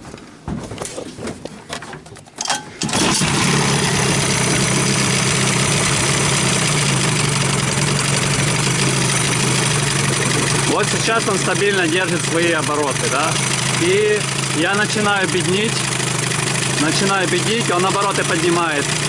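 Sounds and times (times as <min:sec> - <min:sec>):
outboard motor starting and idling: 0:02.5 - 0:19.0.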